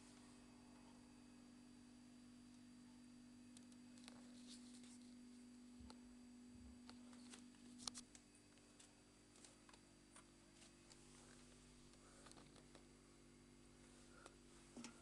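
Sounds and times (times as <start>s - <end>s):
washing machine humming: 8.3s - 15.0s.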